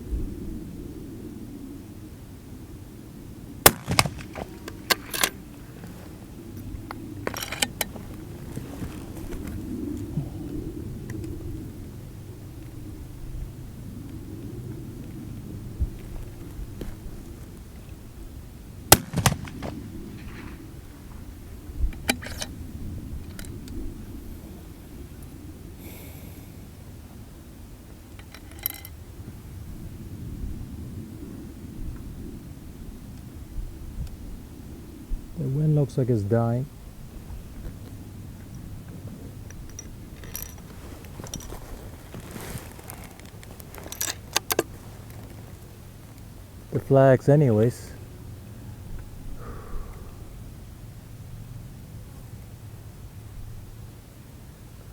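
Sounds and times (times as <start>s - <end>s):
steady low rumble: 0.0s - 28.2s, 28.8s - 54.9s
rifle cracks: 3.7s - 5.4s, 18.9s - 20.4s
rifle mechanical clicks and rattles: 3.7s - 6.0s, 6.9s - 8.3s, 18.9s - 19.8s, 21.9s - 22.5s, 28.1s - 29.0s, 42.9s - 45.4s.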